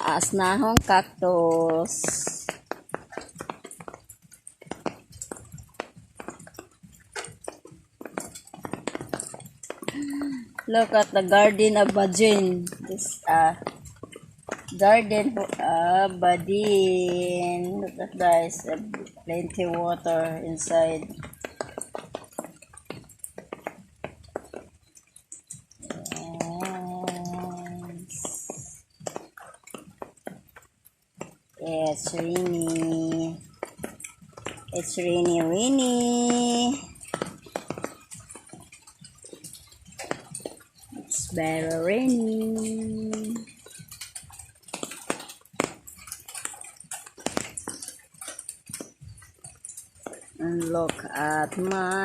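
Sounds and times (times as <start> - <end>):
rain dripping on hard surfaces: 0.0 - 52.0.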